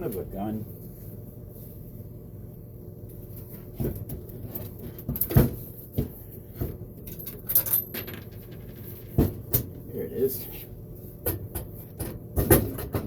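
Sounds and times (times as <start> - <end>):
metallic clinks and knocks: 7.0 - 8.6.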